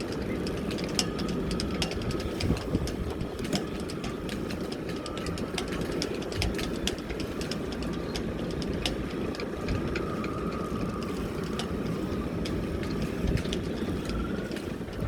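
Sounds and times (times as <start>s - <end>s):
boat engine running: 0.0s - 15.0s
wind buffeting microphone: 0.0s - 15.0s.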